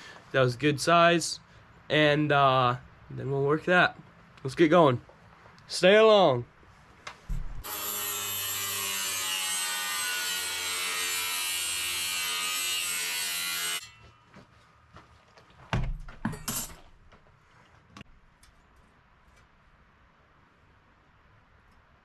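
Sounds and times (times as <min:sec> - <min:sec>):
power tool cutting steel: 0:07.6 - 0:14.0
metal clanks: 0:16.0 - 0:17.0.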